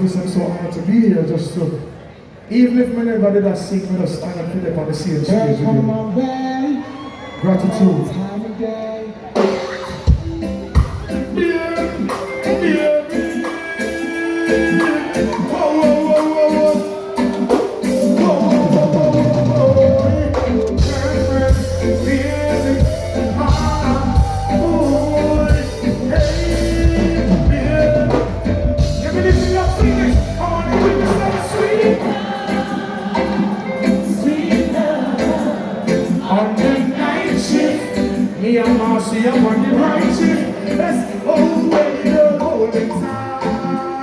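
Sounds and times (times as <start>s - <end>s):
live band music: 3.6s - 44.0s
deep bass line: 18.6s - 31.7s.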